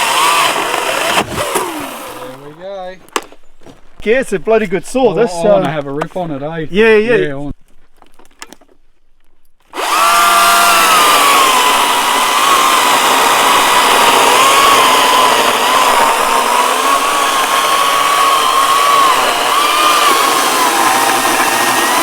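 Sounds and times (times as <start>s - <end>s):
electric chainsaw whine: 0.0s - 2.5s, 9.7s - 22.0s.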